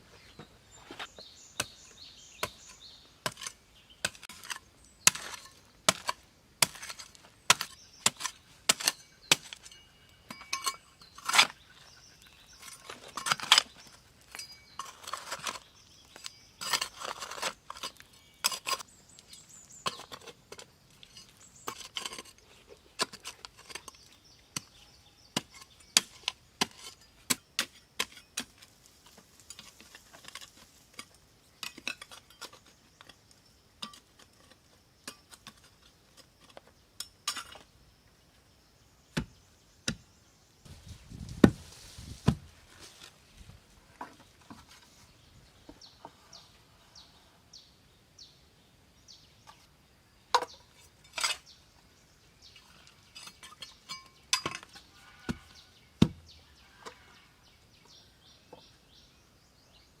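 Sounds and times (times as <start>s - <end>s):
tools clinking and tapping: 9.5s - 11.0s, 53.2s - 54.8s.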